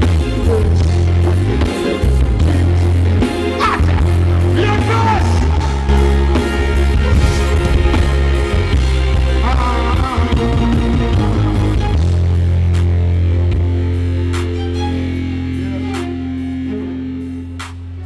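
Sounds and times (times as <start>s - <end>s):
dancehall music with heavy bass: 1.4s - 11.6s.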